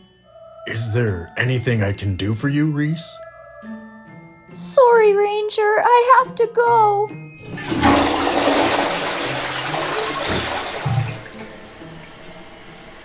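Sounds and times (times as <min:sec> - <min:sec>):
background music: 0:00.0 - 0:13.0
toilet flushing: 0:07.4 - 0:13.0.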